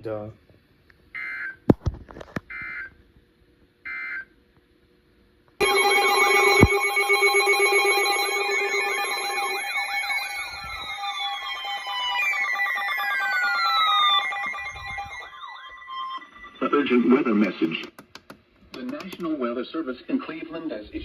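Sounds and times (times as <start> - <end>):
emergency alert data bursts: 5.6 - 17.8
emergency alert tones and wails: 5.6 - 17.9.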